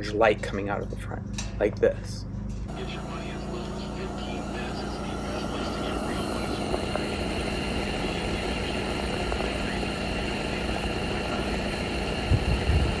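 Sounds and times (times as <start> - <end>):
patio heater burner rushing: 0.0 - 13.0
faint low hum: 2.2 - 13.0.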